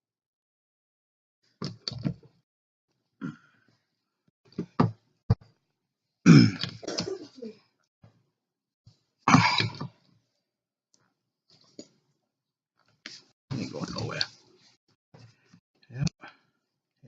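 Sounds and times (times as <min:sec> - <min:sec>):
man coughing: 0:06.3 - 0:07.5, 0:09.3 - 0:09.8.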